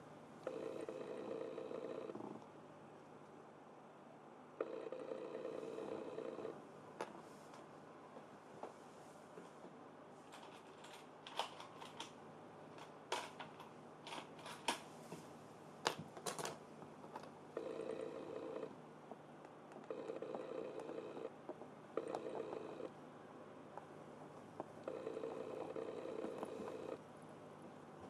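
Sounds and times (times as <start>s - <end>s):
small parts clicking and tapping: 12.8s - 14.8s.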